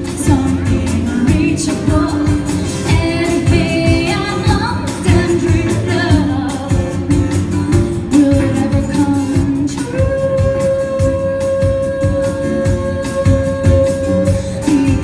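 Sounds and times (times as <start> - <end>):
pop song with singing: 0.0 - 15.0.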